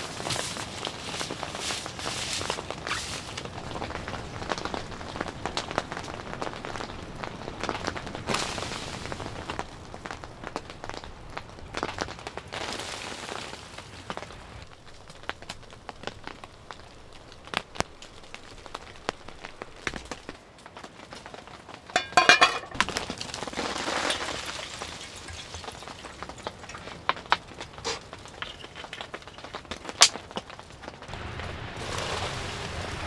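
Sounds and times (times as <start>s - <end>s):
drops tapping on a surface: 22.0s - 22.8s
hiss: 31.1s - 33.0s.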